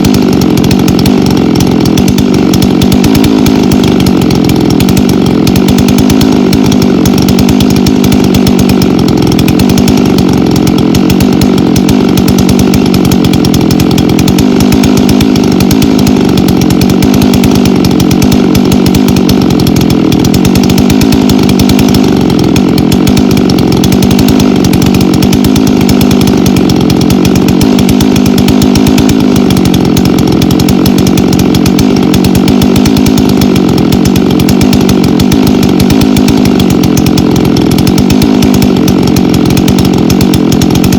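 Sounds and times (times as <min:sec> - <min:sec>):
chainsaw cutting logs: 0:00.0 - 0:40.9.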